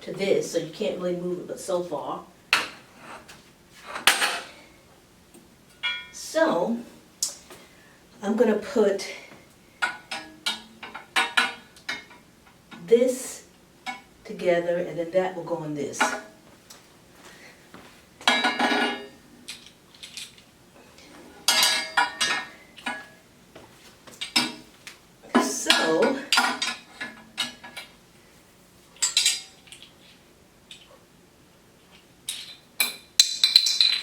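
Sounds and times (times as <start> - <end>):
metal parts clinking and rattling: 18.3 - 20.5, 29.0 - 30.9, 31.9 - 34.0.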